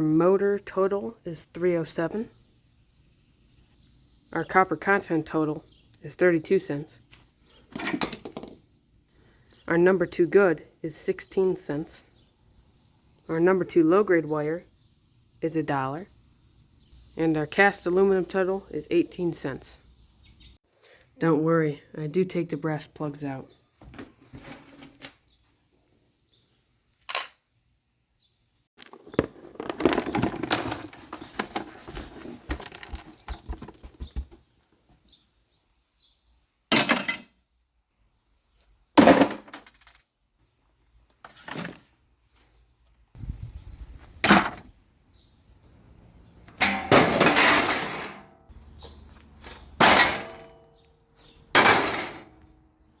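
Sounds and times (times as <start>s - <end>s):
scrap metal clattering: 46.6s - 48.3s, 49.6s - 50.6s, 51.6s - 52.4s.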